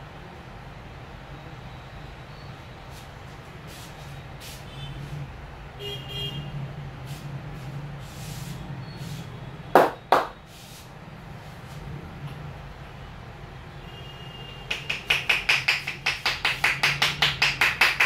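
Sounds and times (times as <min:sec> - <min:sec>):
street traffic hum: 0:00.0 - 0:18.0
soft rubbing strokes: 0:02.9 - 0:05.3, 0:07.0 - 0:09.4, 0:10.4 - 0:12.0
vehicle horn toots: 0:05.8 - 0:06.6.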